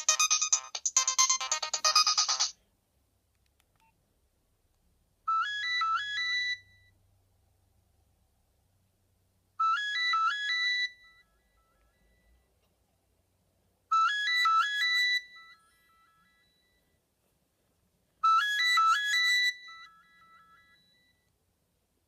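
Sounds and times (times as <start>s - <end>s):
phone ringtone melody: 0.0s - 2.5s, 5.3s - 6.9s, 18.3s - 21.2s.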